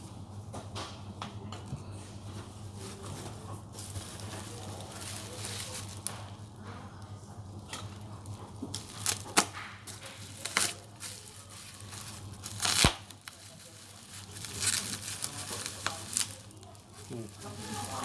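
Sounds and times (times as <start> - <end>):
packaging tearing and crinkling: 3.8 - 6.4, 8.7 - 18.0.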